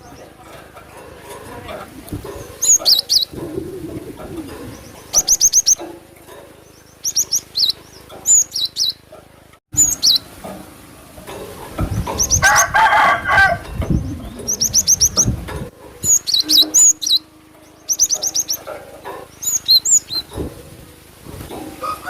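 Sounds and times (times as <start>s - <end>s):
bird calling high sliding notes: 1.9s - 9.1s, 9.7s - 10.9s, 12.1s - 15.4s, 16.0s - 21.2s.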